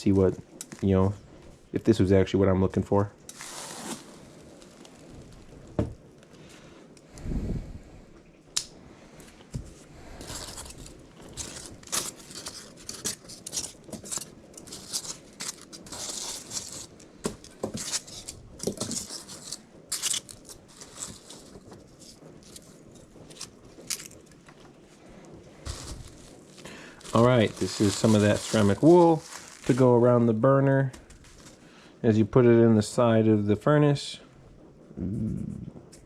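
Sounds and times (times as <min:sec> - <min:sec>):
packaging rustling and tearing: 0:03.2 - 0:06.4, 0:10.1 - 0:30.4, 0:31.0 - 0:31.7.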